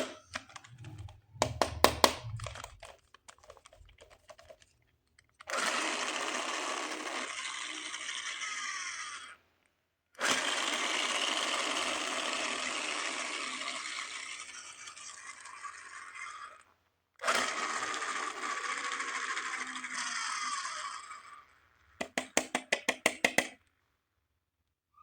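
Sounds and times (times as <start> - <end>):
small electric motor whirring: 5.4 - 9.4, 10.2 - 16.6, 17.2 - 21.6.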